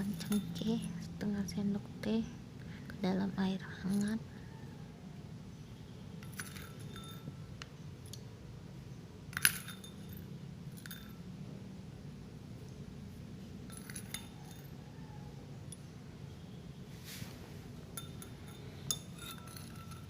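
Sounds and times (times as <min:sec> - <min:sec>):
low steady hum: 0:00.0 - 0:20.0
teaspoon clinking against glass: 0:18.0 - 0:20.0.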